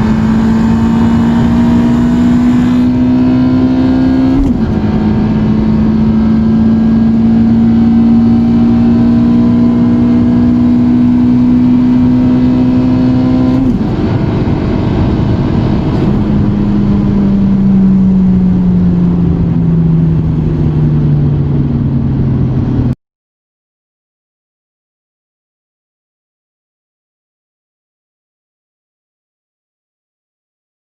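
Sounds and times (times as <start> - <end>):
car engine accelerating: 0.0 - 23.0.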